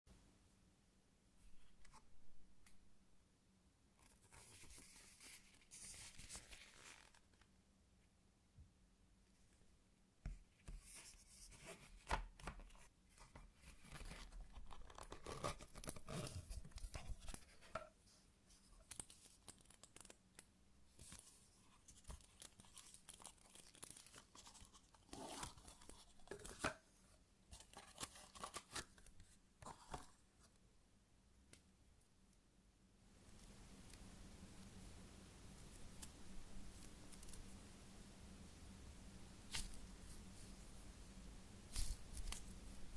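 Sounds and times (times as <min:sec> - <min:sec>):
plastic packaging crinkling: 0:21.8 - 0:26.6.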